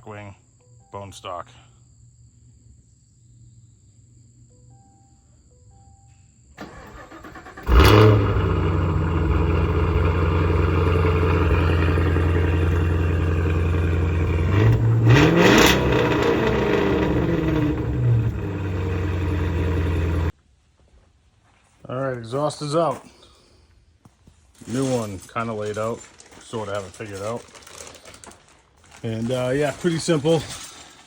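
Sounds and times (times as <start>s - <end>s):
car engine idling and revving: 7.3s - 20.3s.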